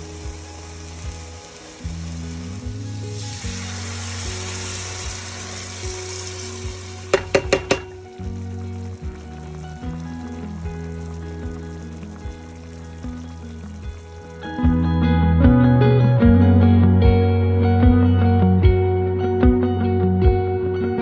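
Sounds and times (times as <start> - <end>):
mushroom sizzling in a pan: 0.0 - 14.8
background music low notes: 0.0 - 21.0.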